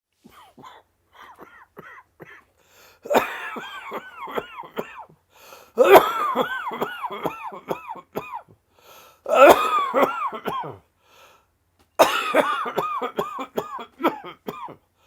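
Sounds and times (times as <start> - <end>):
person coughing with wheeze: 0.3 - 2.5, 3.1 - 5.2, 5.8 - 8.5, 9.3 - 10.8, 12.0 - 14.8.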